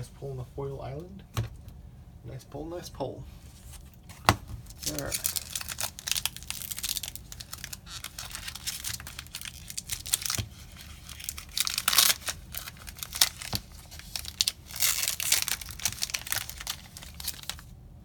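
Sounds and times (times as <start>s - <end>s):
foil wrapper crinkling: 3.7s - 17.7s
foil tearing: 4.1s - 17.7s.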